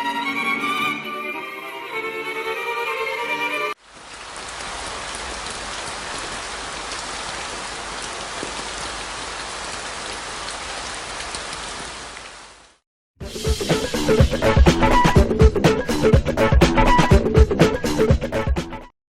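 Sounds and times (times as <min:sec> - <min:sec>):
steady rain hiss: 0:03.8 - 0:12.8.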